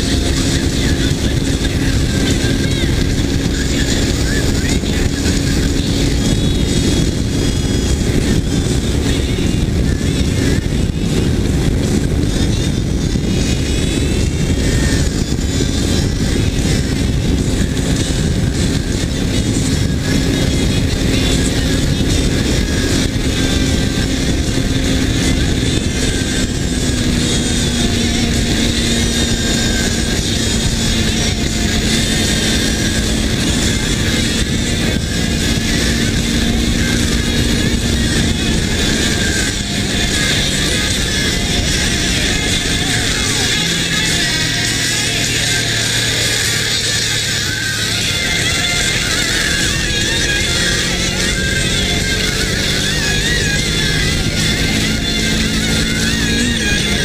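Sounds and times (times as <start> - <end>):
motorcycle cruising: 0.0 - 57.0
wind rush on microphone: 0.0 - 57.0.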